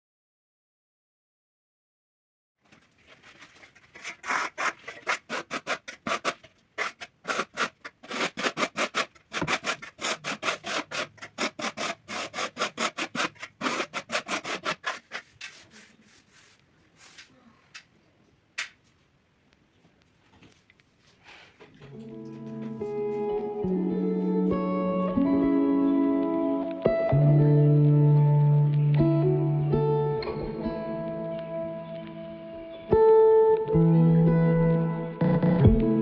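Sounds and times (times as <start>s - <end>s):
hand tool rubbing plaster: 3.3s - 17.3s.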